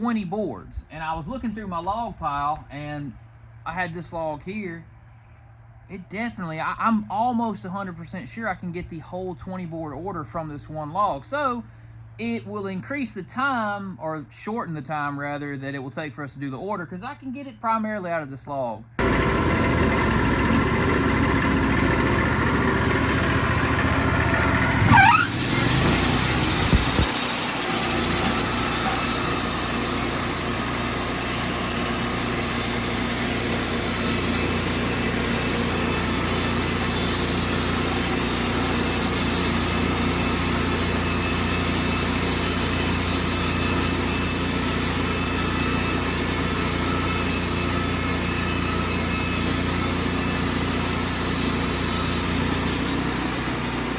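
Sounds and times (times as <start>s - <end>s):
sawmill engine running: 19.0s - 53.9s.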